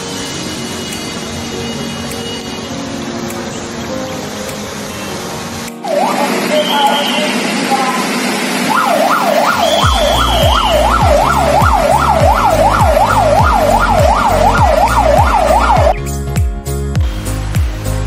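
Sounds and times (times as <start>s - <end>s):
yelp siren wailing: 5.8s - 16.0s
heavy thumping bass beat: 8.8s - 18.0s.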